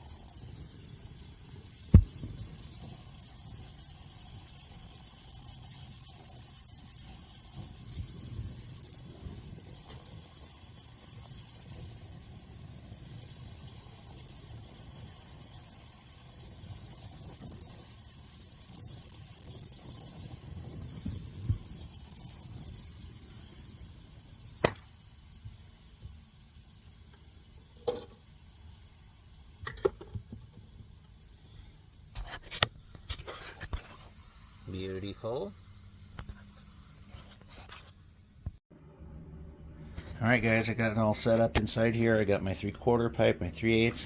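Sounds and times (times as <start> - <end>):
torch flame hissing: 0.0 - 29.6.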